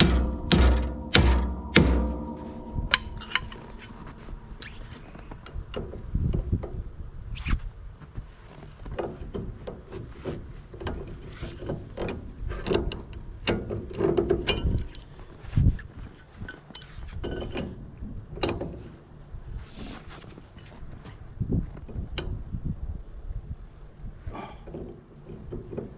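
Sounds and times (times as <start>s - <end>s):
hand tools knocking on metal: 0.0s - 4.7s
heavy thump: 0.0s - 5.8s.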